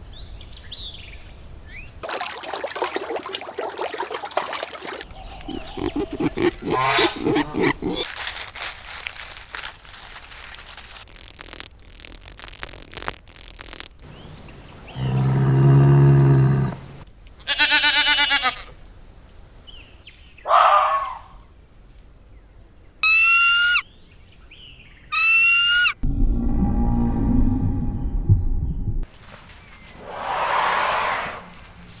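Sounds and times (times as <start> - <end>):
cow mooing: 14.9 - 17.0
quavering bleat: 17.5 - 18.7.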